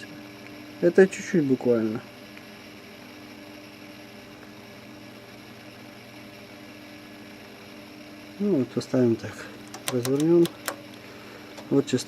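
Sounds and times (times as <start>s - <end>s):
tesla coil buzzing: 0.0s - 12.0s.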